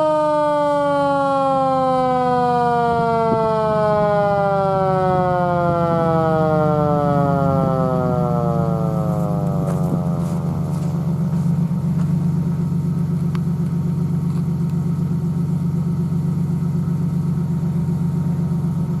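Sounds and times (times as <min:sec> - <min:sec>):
siren winding down: 0:00.0 - 0:14.1
vehicle engine idling: 0:00.2 - 0:19.0.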